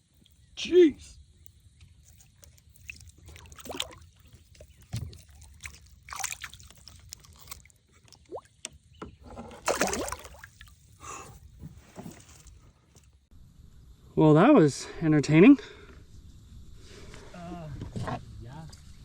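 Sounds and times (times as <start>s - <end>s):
water sloshing around kayak: 1.2s - 13.1s.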